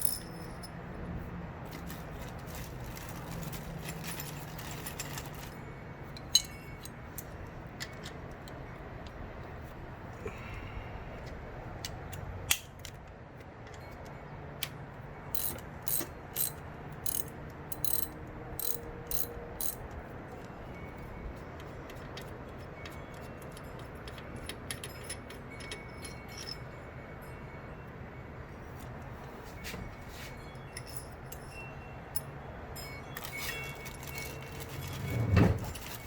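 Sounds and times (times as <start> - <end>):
ratchet wrench clicking: 0.0 - 0.7, 15.3 - 19.9.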